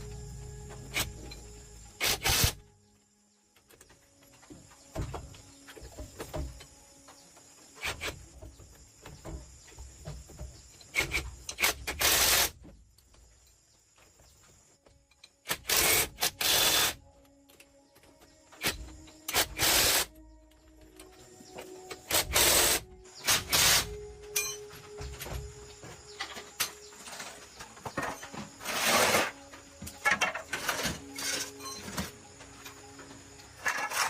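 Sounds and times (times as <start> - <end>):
parts knocking and rubbing: 24.2 - 34.0.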